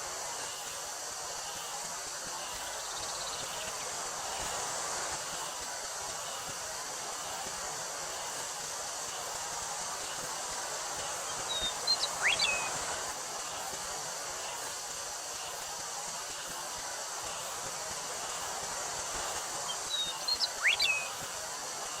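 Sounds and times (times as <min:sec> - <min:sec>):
cicadas droning: 0:00.0 - 0:22.0
wind through wheat: 0:00.0 - 0:22.0
bird chirps and whistle: 0:11.3 - 0:13.0, 0:19.6 - 0:21.3.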